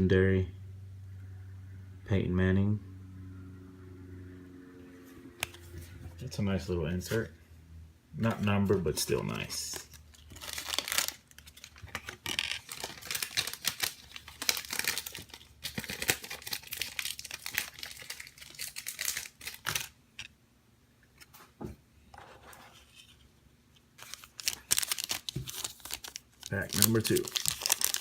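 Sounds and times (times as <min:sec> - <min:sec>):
card pack wrapper crinkling and tearing: 0:09.2 - 0:20.0, 0:24.0 - 0:28.0.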